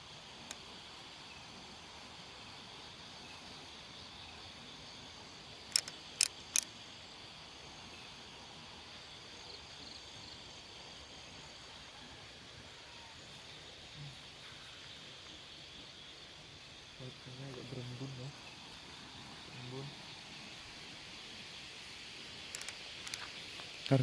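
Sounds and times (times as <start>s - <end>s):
crickets chirping: 0.0s - 24.0s
sharp clicks: 5.7s - 6.7s, 22.5s - 23.3s.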